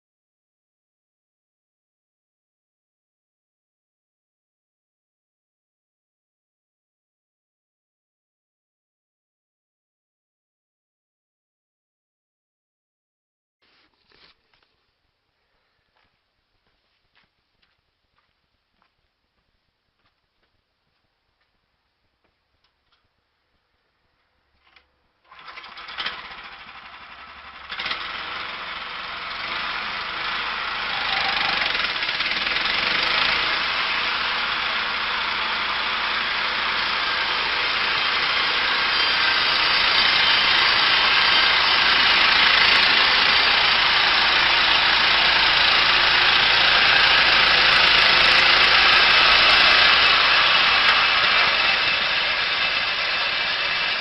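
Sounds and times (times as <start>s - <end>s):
machine engine running: 25.3s - 54.0s.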